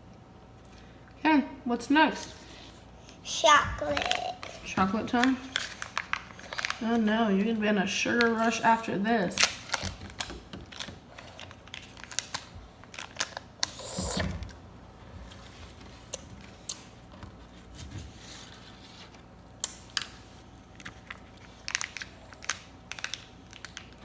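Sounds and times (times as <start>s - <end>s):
foil wrapping rustling: 3.9s - 13.7s, 20.0s - 24.0s.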